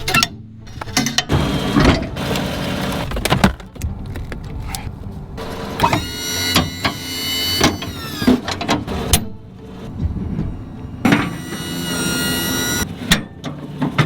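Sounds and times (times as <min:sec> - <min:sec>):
high mechanical whine: 0:05.4 - 0:13.2.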